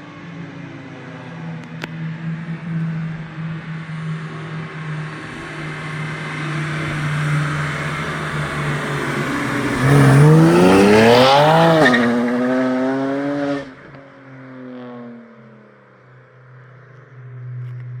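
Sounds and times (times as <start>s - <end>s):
car exhaust accelerating: 1.6s - 13.8s
engine humming: 1.6s - 13.8s.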